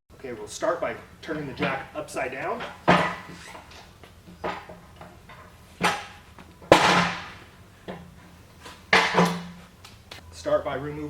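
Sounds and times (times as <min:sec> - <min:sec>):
pallet jack metal clanks: 0:01.2 - 0:08.1, 0:08.7 - 0:09.6.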